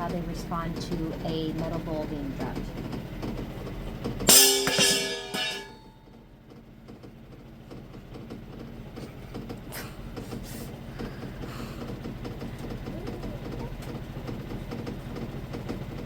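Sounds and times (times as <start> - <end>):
metal bowl clattering on floor: 4.2 - 5.9.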